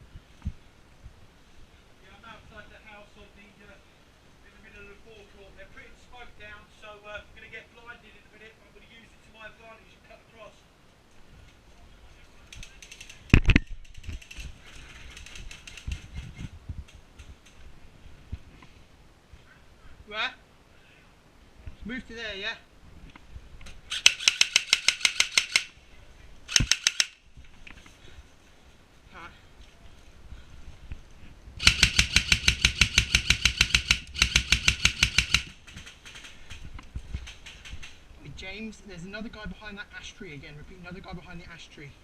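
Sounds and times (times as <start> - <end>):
airsoft guns firing bursts: 23.9 - 25.7, 26.5 - 27.2, 31.6 - 36.0.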